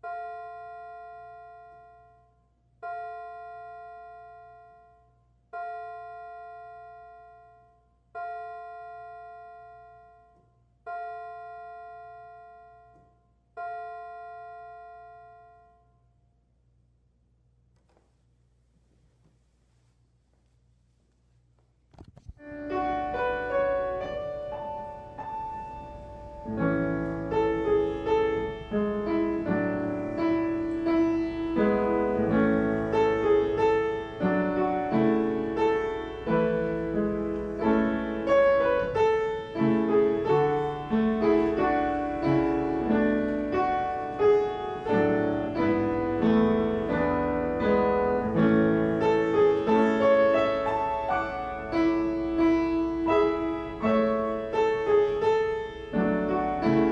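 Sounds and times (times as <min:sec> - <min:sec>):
slow piano chords: 0:22.4 - 0:56.9.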